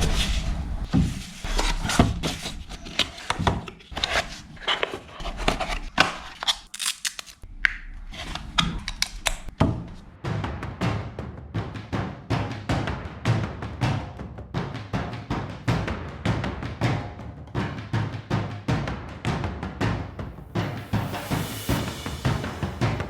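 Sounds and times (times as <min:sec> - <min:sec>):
packaging rustling: 0:05.7 - 0:07.4
packaging tearing: 0:06.3 - 0:07.4.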